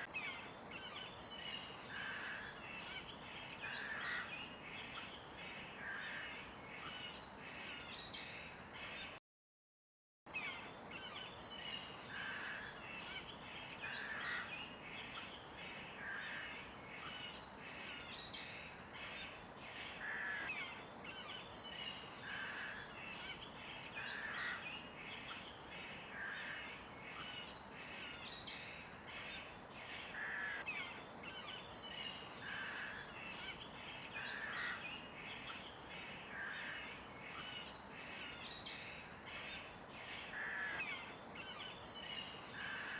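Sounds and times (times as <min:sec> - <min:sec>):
small birds chirping and trilling: 0:00.0 - 0:09.2, 0:10.3 - 0:42.9.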